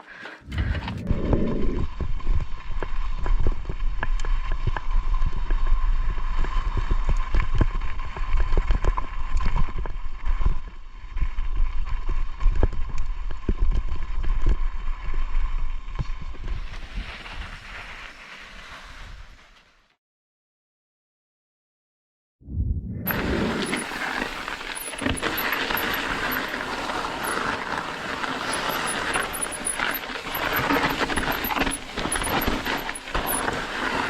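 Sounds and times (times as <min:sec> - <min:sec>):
wind on microphone: 0:00.4 - 0:04.0, 0:22.4 - 0:24.2.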